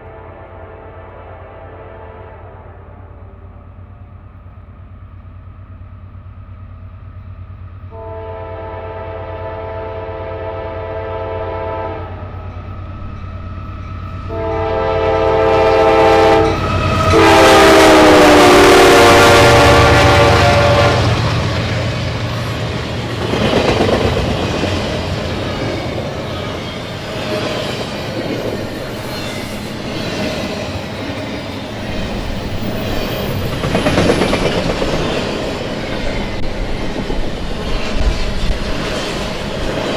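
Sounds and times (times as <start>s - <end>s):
locomotive air horn blasts: 0.0s - 3.4s, 7.9s - 12.4s, 14.3s - 21.5s
diesel locomotive engine: 0.0s - 39.9s.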